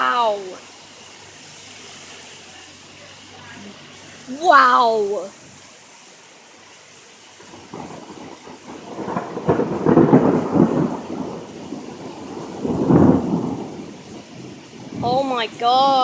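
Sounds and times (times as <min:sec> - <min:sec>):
heavy rain hissing: 0:00.0 - 0:16.0
thunder rumbling: 0:07.4 - 0:16.0.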